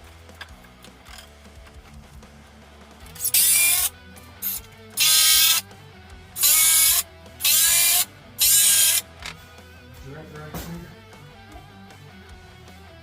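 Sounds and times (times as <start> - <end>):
power drill driving screws: 3.1 - 5.6, 6.4 - 9.1.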